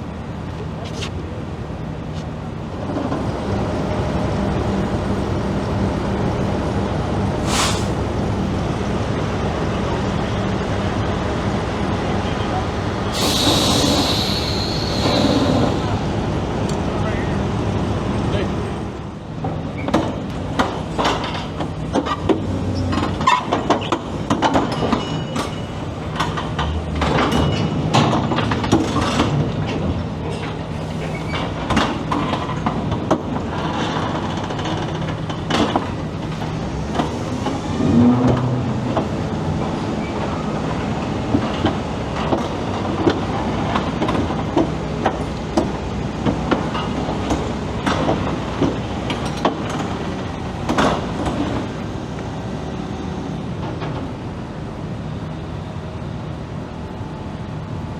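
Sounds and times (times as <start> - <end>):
metal clanks and squeals: 13.1 - 16.0, 30.3 - 31.5.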